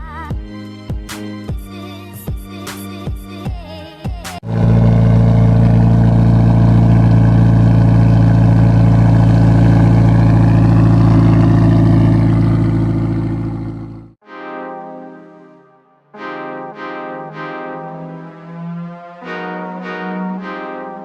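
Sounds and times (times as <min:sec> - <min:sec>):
car engine idling: 0:04.4 - 0:14.2.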